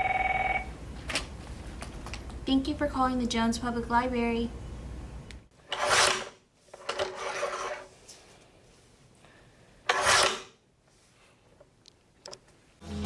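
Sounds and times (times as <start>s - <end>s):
paper cutter blade rasping: 5.7s - 7.9s, 9.9s - 10.5s.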